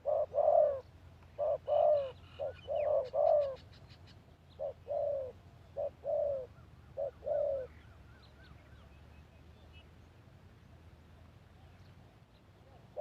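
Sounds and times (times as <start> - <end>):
dove cooing: 0.0 - 8.0, 12.7 - 13.0
small birds chirping: 0.0 - 13.0.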